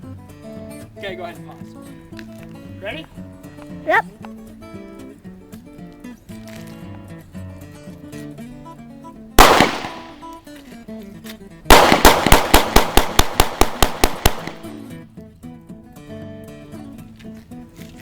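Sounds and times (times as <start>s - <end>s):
pistol shots: 9.4s - 10.4s, 11.7s - 14.9s.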